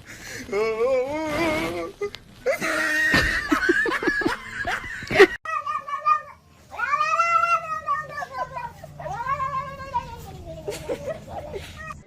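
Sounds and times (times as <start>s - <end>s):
cat yowling: 5.5s - 10.4s.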